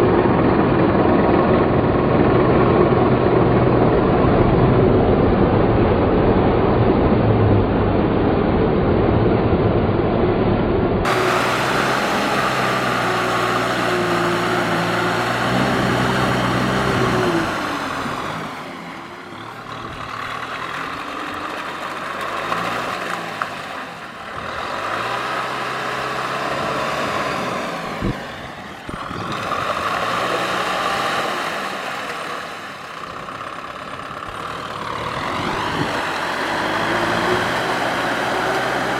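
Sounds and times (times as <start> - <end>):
tractor engine revving: 11.0 - 38.9.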